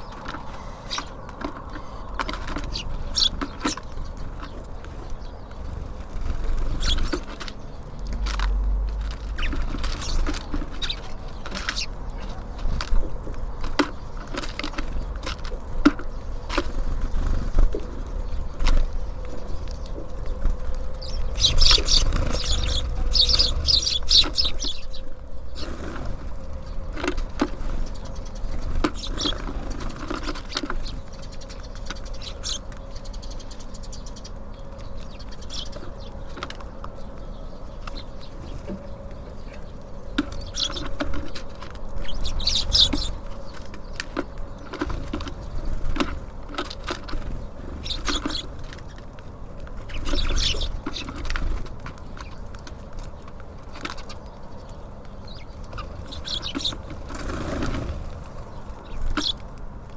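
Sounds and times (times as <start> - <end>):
wing flutters: 0.0 - 13.0, 18.6 - 25.0
steady low rumble: 0.0 - 13.6, 14.9 - 29.6
small birds chirping: 0.0 - 59.9.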